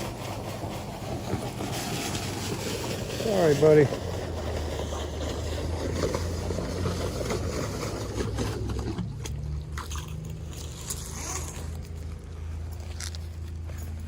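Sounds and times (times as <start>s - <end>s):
truck engine humming: 0.0s - 14.0s
water slurping up a hose: 0.0s - 14.0s.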